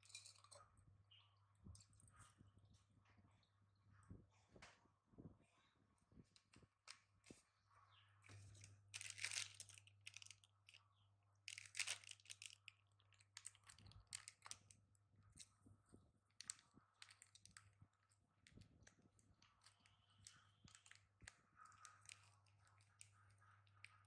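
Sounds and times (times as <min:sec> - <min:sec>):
faint crinkling and rustling: 0:00.0 - 0:24.0.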